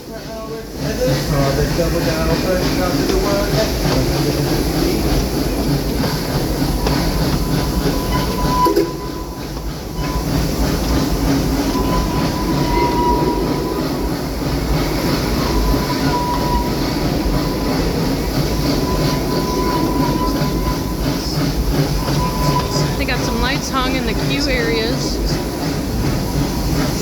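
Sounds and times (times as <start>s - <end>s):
train rumble and wheel clatter: 0.0s - 27.0s
thin wheel squeal: 6.8s - 10.5s, 11.4s - 14.1s, 15.4s - 23.3s.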